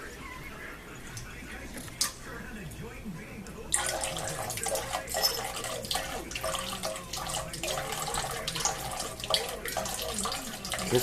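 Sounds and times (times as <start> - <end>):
water running from a spigot: 3.8 - 11.0.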